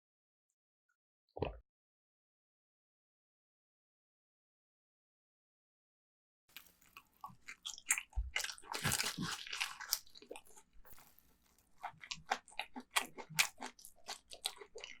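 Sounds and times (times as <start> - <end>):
crunchy bites and chewing: 6.5 - 15.0.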